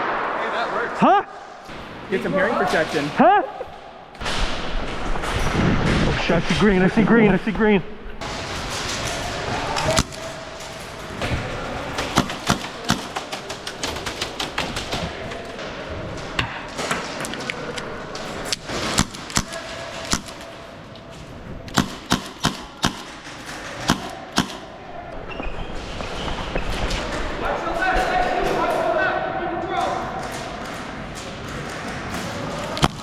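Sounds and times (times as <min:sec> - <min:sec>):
airsoft guns firing: 0:08.3 - 0:10.6, 0:11.8 - 0:15.2, 0:18.6 - 0:20.5, 0:21.7 - 0:24.8.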